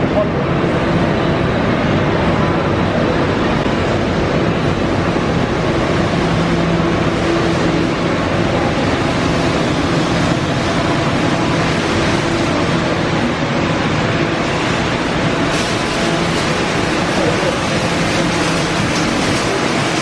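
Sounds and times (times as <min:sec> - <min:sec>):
factory machinery rushing: 0:00.0 - 0:20.0.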